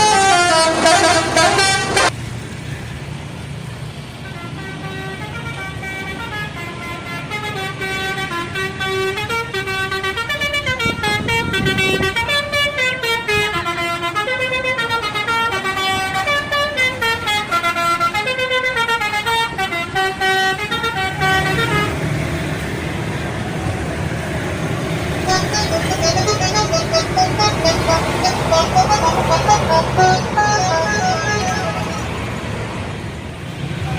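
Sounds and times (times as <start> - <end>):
electric trumpet horns playing tune: 0.0 - 2.1, 4.8 - 22.0, 25.2 - 32.4
vehicle noise: 0.0 - 33.9.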